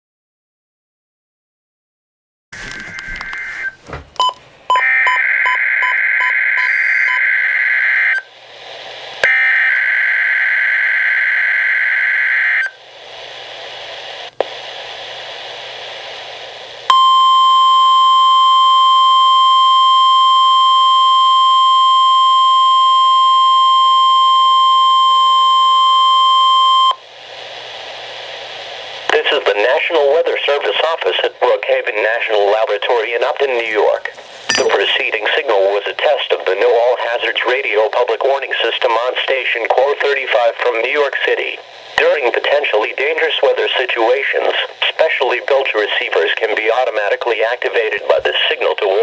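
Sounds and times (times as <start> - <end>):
steady warning alarm tone: 2.7 - 8.3, 9.2 - 12.8
radio static hiss: 6.6 - 16.9, 27.0 - 49.0.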